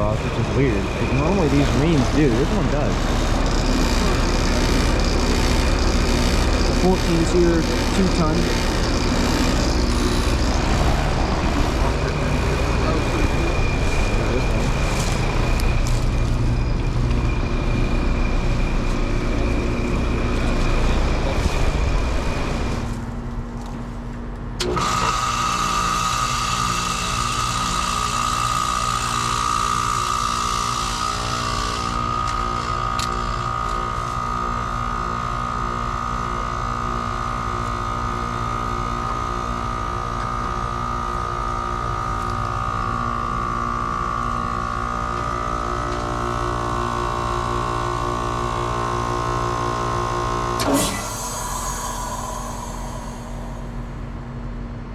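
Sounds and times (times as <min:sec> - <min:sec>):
compressor high whine: 0:00.0 - 0:54.9
heat pump running: 0:00.0 - 0:54.9
sudden whoosh of valve: 0:50.6 - 0:54.6.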